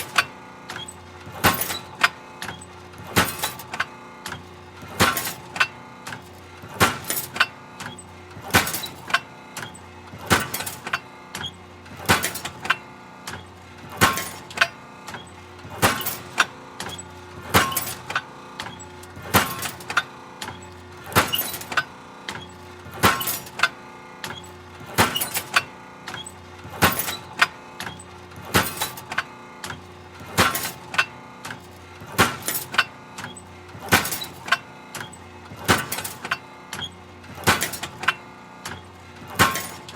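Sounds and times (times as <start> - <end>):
metal shear blade pounding: 1.4 - 2.5, 3.1 - 3.8, 5.0 - 5.7, 6.8 - 9.2, 10.2 - 11.0, 12.0 - 12.8, 13.9 - 15.2, 15.8 - 20.0, 21.1 - 21.9, 23.0 - 23.7, 24.9 - 25.6, 26.7 - 27.6, 28.4 - 29.2, 30.3 - 31.1, 32.1 - 36.4, 37.4 - 39.9.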